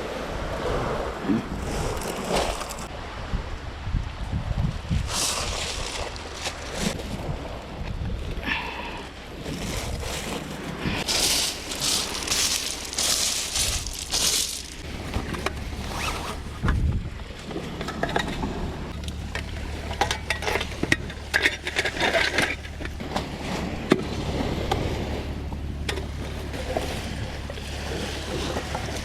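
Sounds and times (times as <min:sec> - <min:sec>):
gear scraping and clinking: 0:01.6 - 0:02.9, 0:09.4 - 0:16.7, 0:17.7 - 0:23.7.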